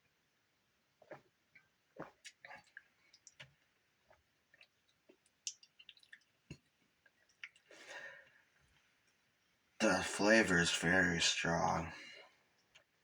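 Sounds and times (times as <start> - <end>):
mouth clicks and lip smacks: 1.0 - 7.7
soft breath: 7.7 - 8.5.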